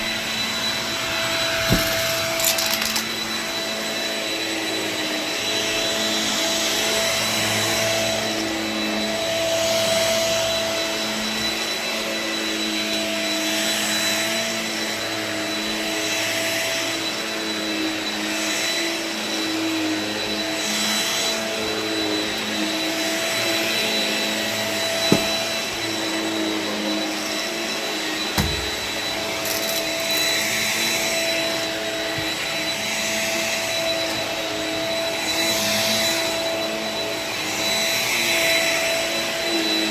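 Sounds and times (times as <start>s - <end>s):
stick vacuum running: 0.0s - 6.2s, 21.4s - 38.8s
sharp knocks: 25.1s - 25.5s.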